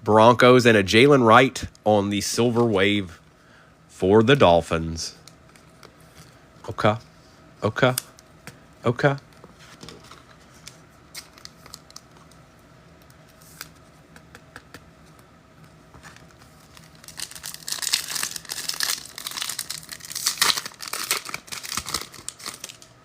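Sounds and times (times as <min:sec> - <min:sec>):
foil wrapper tearing and crinkling: 0:16.6 - 0:22.9.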